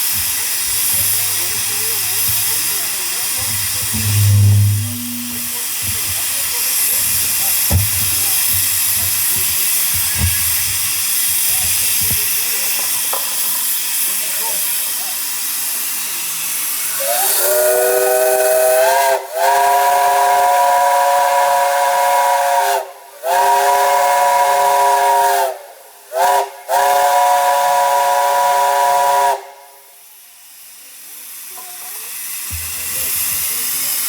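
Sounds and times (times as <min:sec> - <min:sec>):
hissing steam: 0:00.0 - 0:34.0
steam whistle blasts: 0:03.5 - 0:06.0, 0:17.0 - 0:29.9.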